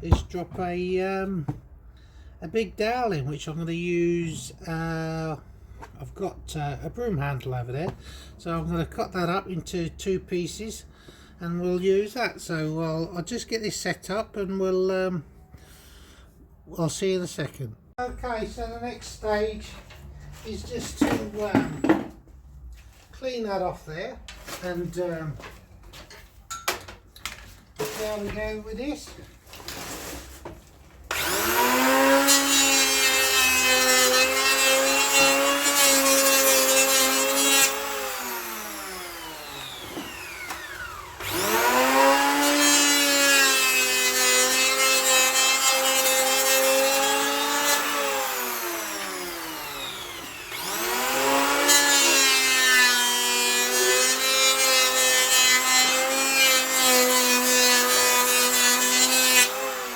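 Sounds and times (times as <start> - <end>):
electric hand planer cutting wood: 31.1 - 59.9.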